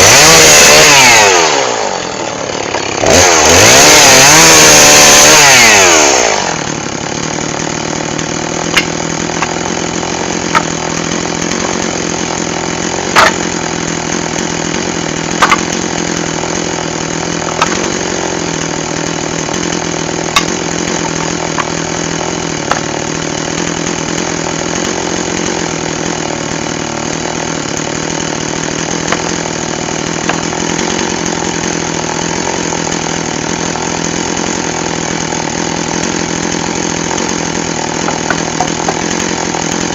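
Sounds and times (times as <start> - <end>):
chainsaw engine idling: 0.0 - 39.9
sharp clicks or knocks: 15.4 - 15.7.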